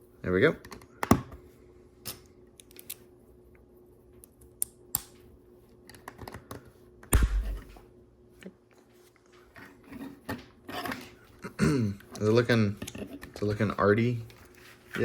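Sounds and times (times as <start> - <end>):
loud thump: 7.1 - 7.8.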